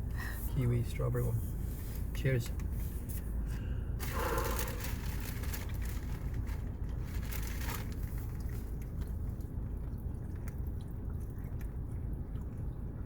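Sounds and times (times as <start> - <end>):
low rumble: 3.9 - 13.0.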